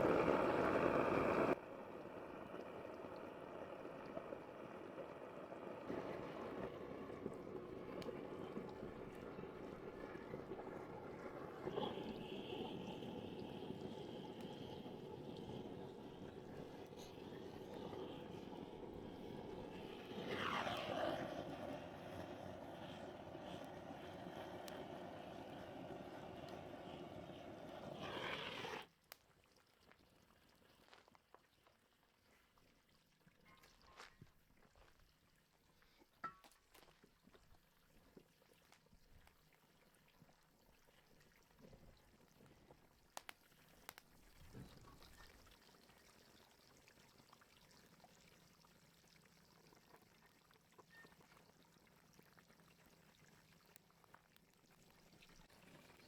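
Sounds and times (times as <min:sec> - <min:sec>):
water pouring: 0:00.0 - 0:28.9.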